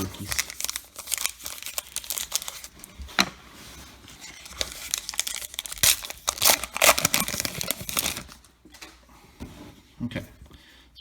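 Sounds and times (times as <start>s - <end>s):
card pack wrapper tearing: 0.0s - 3.2s, 4.1s - 8.5s.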